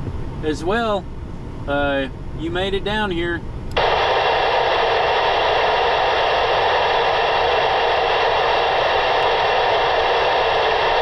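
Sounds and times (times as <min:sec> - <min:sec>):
radio static hiss: 0:03.8 - 0:11.0.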